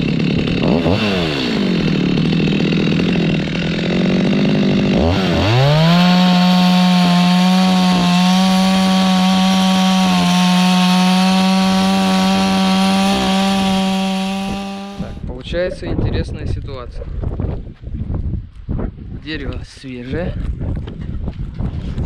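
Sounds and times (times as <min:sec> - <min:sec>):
chainsaw cutting log: 0:00.0 - 0:15.2.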